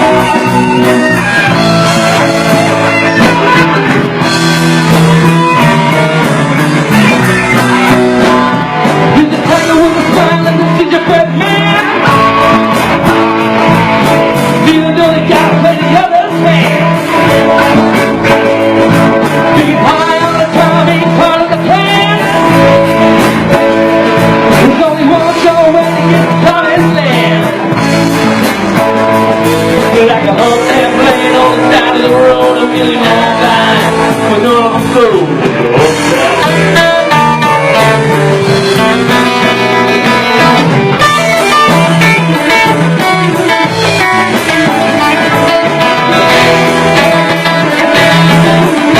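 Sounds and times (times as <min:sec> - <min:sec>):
electric guitar: 0:00.0 - 0:48.9
live rock band playing: 0:00.0 - 0:48.9
person singing: 0:00.0 - 0:48.9.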